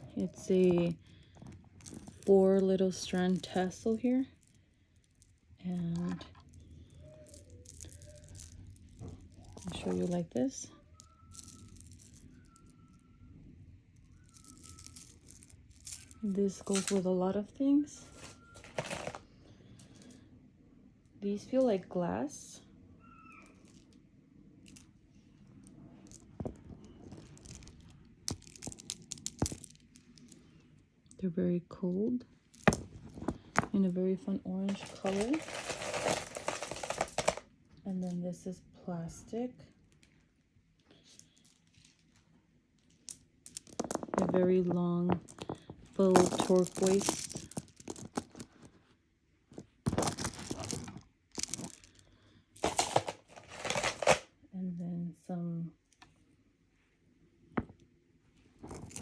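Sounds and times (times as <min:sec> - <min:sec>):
glass beads clicking: 0:00.0 - 0:13.1, 0:14.0 - 0:17.1, 0:26.1 - 0:30.4, 0:32.6 - 0:33.7, 0:43.1 - 0:48.6, 0:49.8 - 0:52.0, 0:58.6 - 0:59.0
soft rustle: 0:17.9 - 0:20.2, 0:34.6 - 0:37.4.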